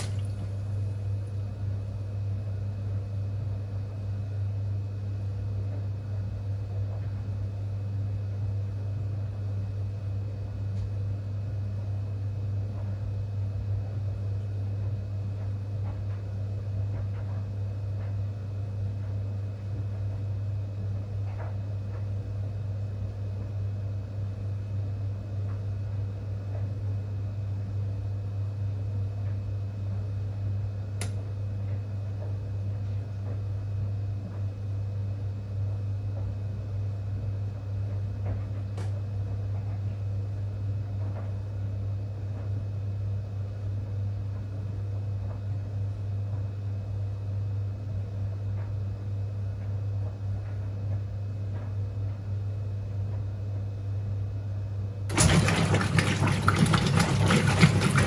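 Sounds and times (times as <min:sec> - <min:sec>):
washing machine humming: 0:00.0 - 0:10.7, 0:54.7 - 0:58.0.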